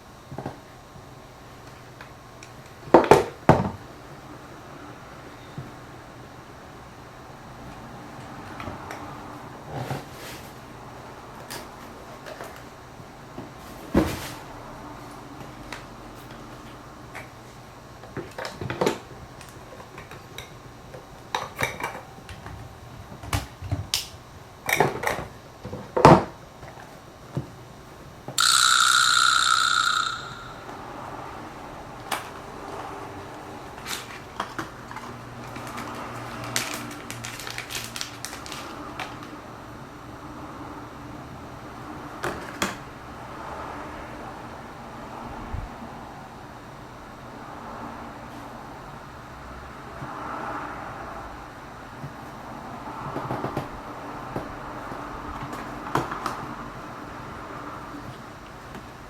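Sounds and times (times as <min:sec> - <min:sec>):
steady high-pitched tone: 0:28.4 - 0:32.0.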